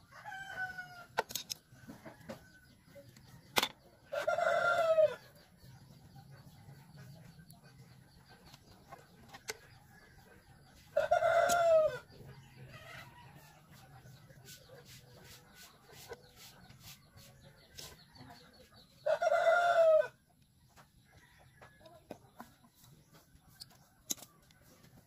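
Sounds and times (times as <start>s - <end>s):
rooster crowing: 0.1s - 1.1s, 4.1s - 5.2s, 11.0s - 12.0s, 19.0s - 20.2s.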